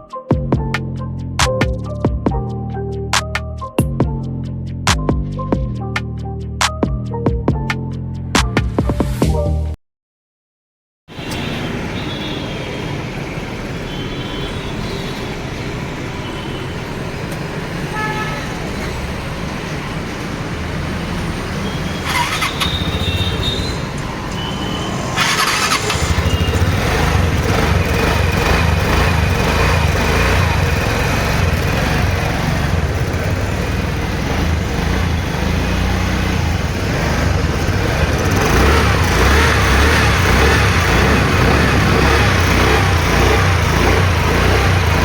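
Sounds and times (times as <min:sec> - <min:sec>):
scooter engine starting and running: 0:11.1 - 0:45.0.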